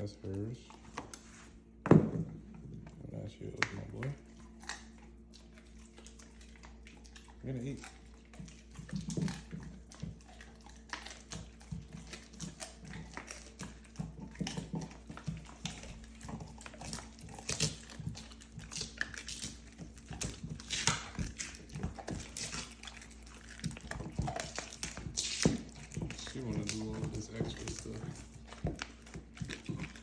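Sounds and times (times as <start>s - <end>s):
dog chewing bones: 1.9s - 30.0s.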